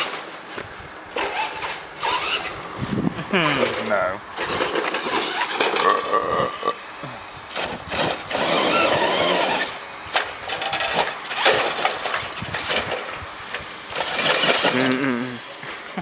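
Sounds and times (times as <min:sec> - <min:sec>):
toy truck motor running: 0:01.2 - 0:02.6, 0:03.6 - 0:06.0, 0:07.5 - 0:13.1, 0:13.9 - 0:15.1.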